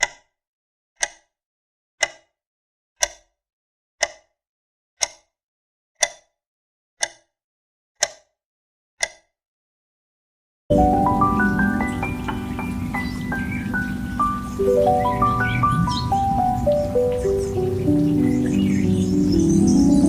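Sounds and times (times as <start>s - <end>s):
sharp ticks: 0.0s - 0.3s, 1.0s - 1.3s, 2.0s - 2.3s, 3.0s - 3.3s, 4.0s - 4.3s, 5.0s - 5.3s, 6.0s - 6.4s, 7.0s - 7.3s, 8.0s - 8.3s, 9.0s - 9.3s.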